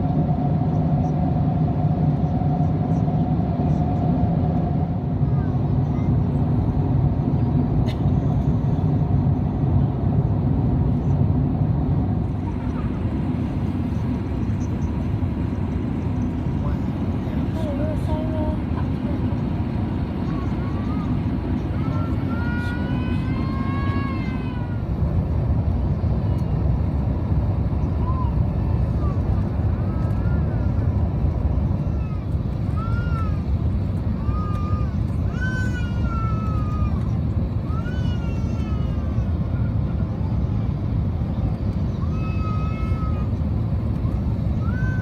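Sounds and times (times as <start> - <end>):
aircraft cabin rumble: 0.0 - 45.0
faint high-pitched wavering cry: 44.6 - 45.0.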